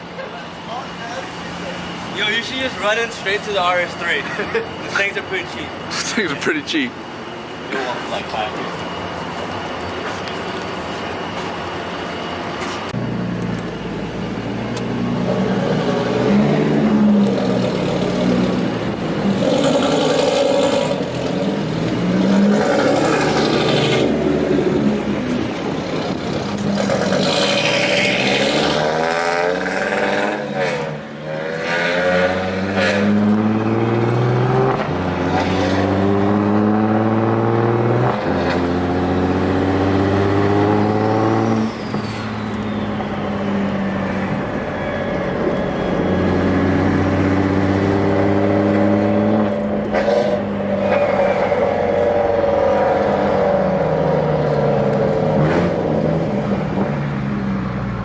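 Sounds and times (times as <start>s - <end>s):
car engine accelerating: 12.9s - 58.0s.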